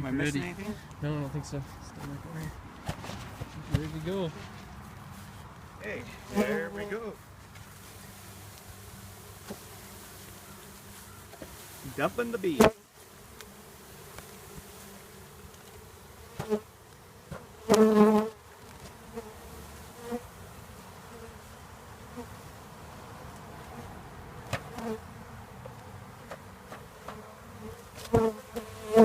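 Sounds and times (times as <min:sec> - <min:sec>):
honeybees buzzing: 0:00.0 - 0:29.0
bee flying past microphone: 0:25.8 - 0:29.0.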